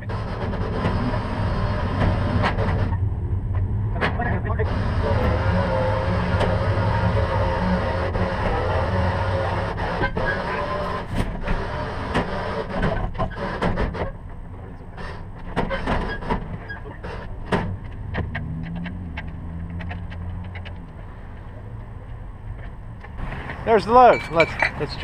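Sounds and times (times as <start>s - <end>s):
vehicle engine running low: 0.0s - 13.2s, 16.4s - 25.0s
sharp clicks and knocks: 15.4s - 25.0s.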